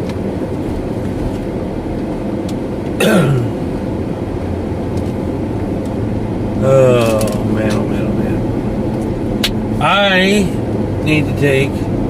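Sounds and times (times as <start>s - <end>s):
car cabin road and engine noise: 0.0s - 12.0s
person groaning: 3.0s - 3.6s, 6.6s - 7.5s.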